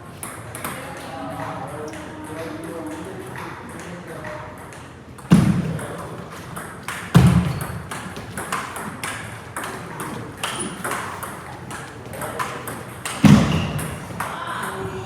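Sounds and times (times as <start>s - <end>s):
table tennis balls clicking: 0.1s - 15.0s
heavy thuds: 13.2s - 14.2s.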